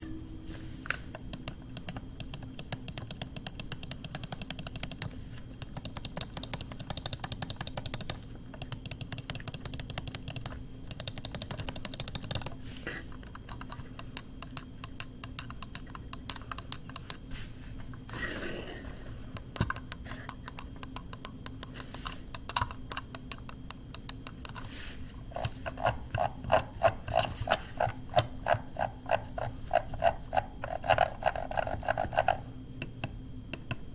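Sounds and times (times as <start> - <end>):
mouse buttons clicking: 1.2 - 12.6, 19.4 - 24.6.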